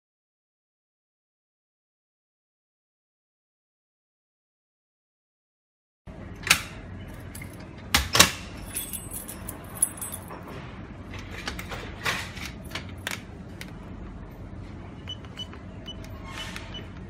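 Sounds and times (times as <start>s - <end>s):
metal objects clicking and jingling: 8.6s - 10.4s.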